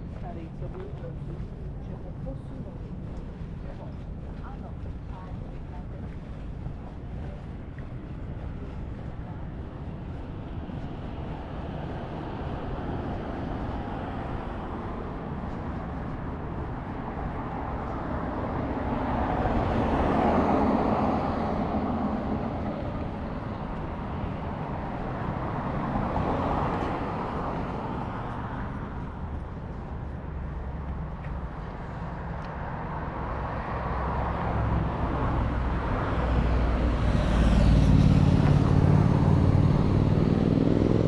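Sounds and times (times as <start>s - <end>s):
low traffic rumble: 0.0s - 41.0s
vehicle passing: 16.9s - 41.0s.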